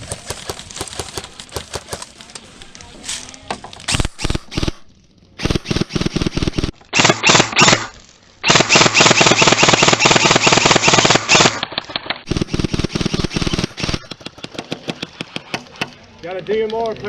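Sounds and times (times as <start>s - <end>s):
airsoft rifle firing bursts: 5.4s - 14.6s.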